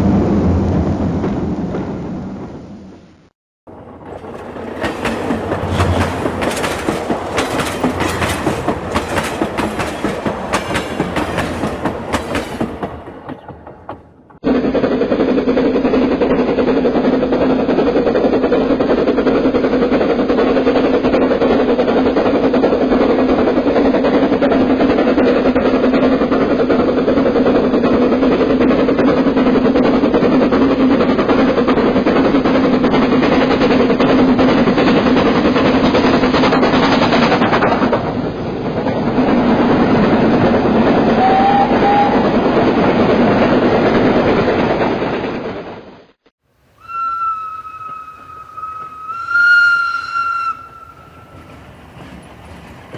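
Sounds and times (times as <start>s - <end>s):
train wheels clattering over rail joints: 3.7s - 14.4s, 46.9s - 52.9s.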